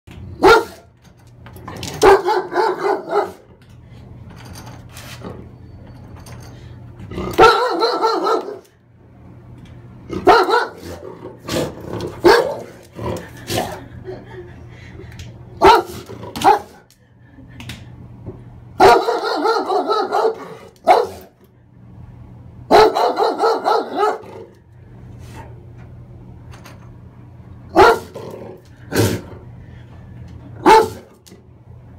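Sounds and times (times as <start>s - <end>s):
dog barking: 0.4s - 0.9s, 2.0s - 3.4s, 7.4s - 8.7s, 10.2s - 11.0s, 12.2s - 12.8s, 15.6s - 16.8s, 18.8s - 21.3s, 22.7s - 24.3s, 27.8s - 28.2s, 30.6s - 31.1s.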